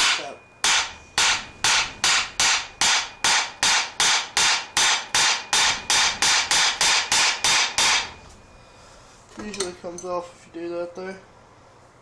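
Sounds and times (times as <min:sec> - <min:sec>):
hammer striking metal: 0:00.0 - 0:08.2.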